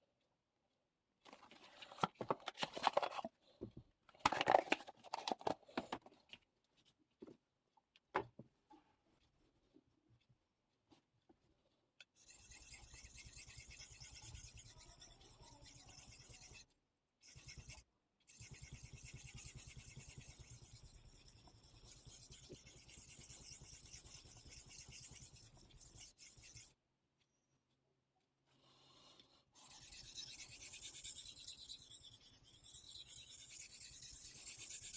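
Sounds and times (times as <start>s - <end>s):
knife sharpening on whetstone: 12.2s - 16.6s, 18.4s - 26.8s, 29.6s - 34.9s.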